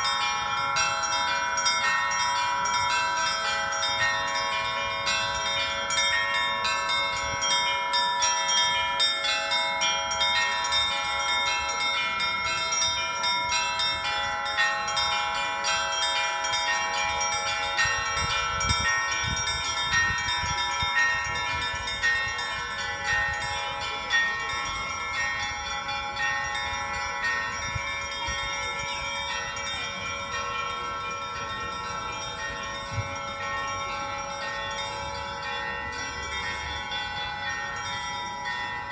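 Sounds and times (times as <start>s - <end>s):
church bells ringing rhythmically: 0.0s - 38.9s.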